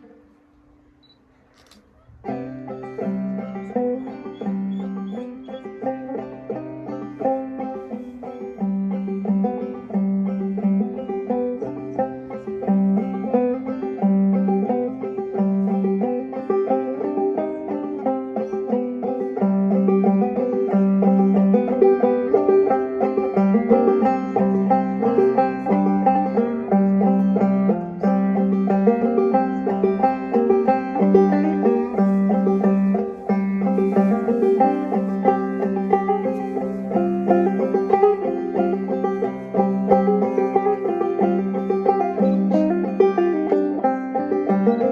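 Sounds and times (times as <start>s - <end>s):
clawhammer banjo folk tune: 0.0s - 0.8s, 2.1s - 44.9s.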